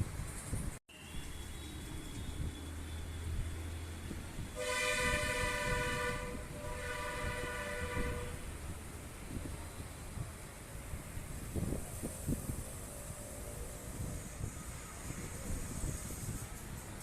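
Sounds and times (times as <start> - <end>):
loud two-note horn blast: 4.6 - 8.4.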